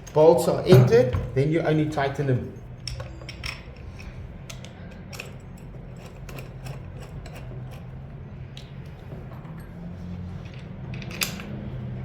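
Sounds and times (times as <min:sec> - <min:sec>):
steady low hum: 0:00.0 - 0:12.0
metal bolts clicking and scraping: 0:02.8 - 0:08.0, 0:10.4 - 0:11.7.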